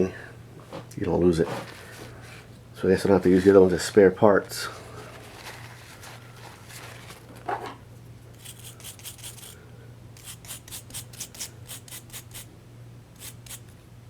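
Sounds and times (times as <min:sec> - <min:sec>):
scratchy rubbing strokes: 0:08.4 - 0:09.6, 0:10.2 - 0:12.5, 0:13.2 - 0:13.7.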